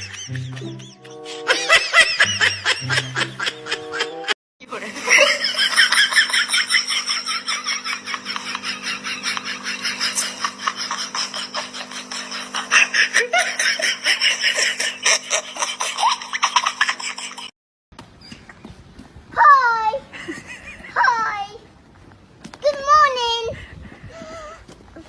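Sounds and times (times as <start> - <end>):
laughter in short bursts: 0.0 - 17.5
steady low hum: 4.6 - 17.5.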